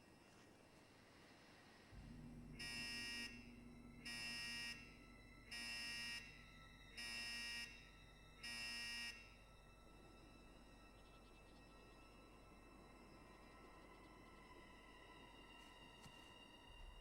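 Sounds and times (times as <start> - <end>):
low steady hum: 0.0 - 17.0
electronic buzzer: 2.2 - 9.4.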